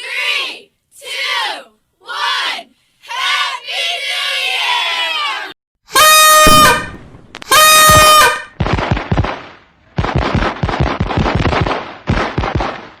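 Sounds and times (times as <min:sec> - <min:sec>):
loud horn blasts: 0:05.9 - 0:08.6
firecrackers banging: 0:06.0 - 0:13.0.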